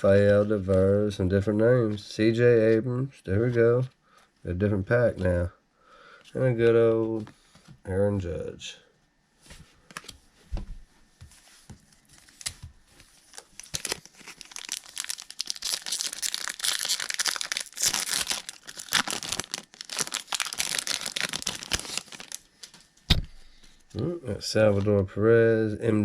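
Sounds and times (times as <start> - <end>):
wrapper crinkling: 12.0 - 22.8.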